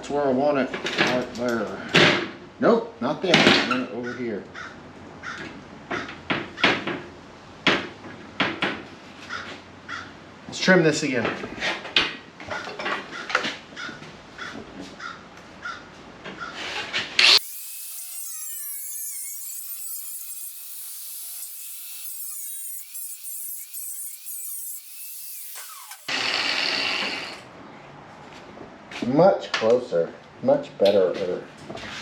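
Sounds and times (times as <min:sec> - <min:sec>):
sheet metal cutting and scraping: 0:16.5 - 0:27.4.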